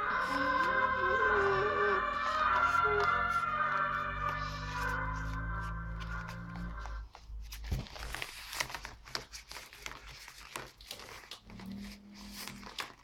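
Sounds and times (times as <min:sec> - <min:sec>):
intro music: 0:00.0 - 0:07.0
paper crinkling and rustling: 0:00.0 - 0:13.0.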